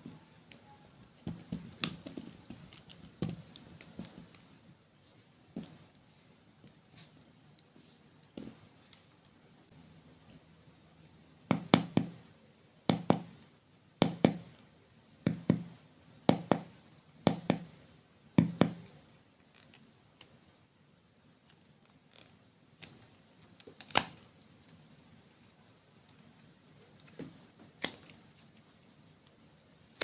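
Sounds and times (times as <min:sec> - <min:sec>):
hands working clay and slime: 0:00.0 - 0:30.0.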